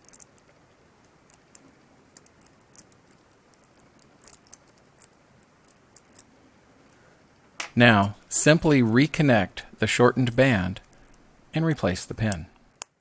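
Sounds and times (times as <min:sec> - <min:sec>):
small metallic clicks and ticks: 0:00.0 - 0:07.0, 0:12.2 - 0:13.0.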